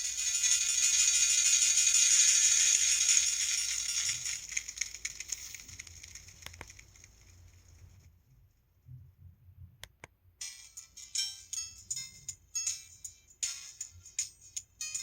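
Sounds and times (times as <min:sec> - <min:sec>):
phone ringtone melody: 0:10.4 - 0:15.0.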